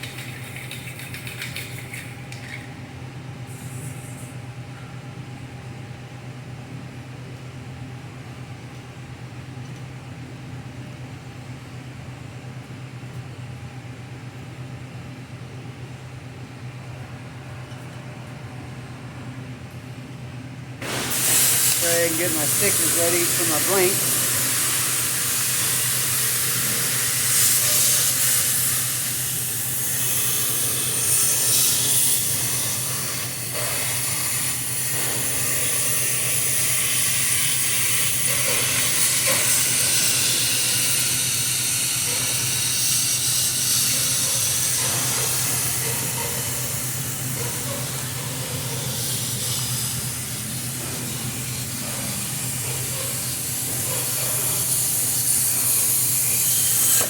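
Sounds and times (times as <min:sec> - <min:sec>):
low electrical hum: 0:00.0 - 0:57.0
shop machinery hiss: 0:03.5 - 0:04.4, 0:20.8 - 0:57.0.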